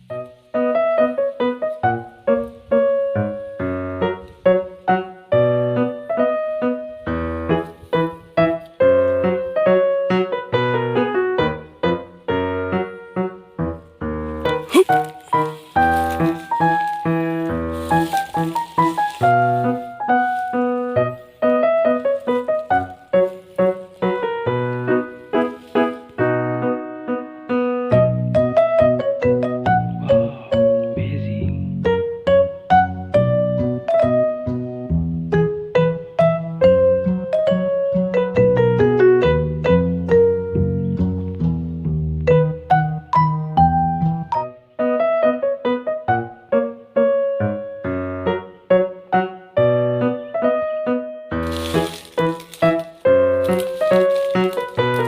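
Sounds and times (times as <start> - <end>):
keyboard melody: 0.0 - 31.2, 42.1 - 55.0
background piano music: 0.0 - 55.0.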